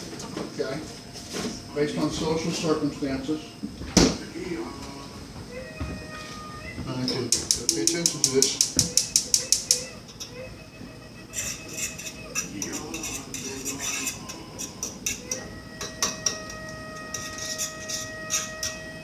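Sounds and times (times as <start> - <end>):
metal utensil scraping frying pan: 11.4 - 18.8.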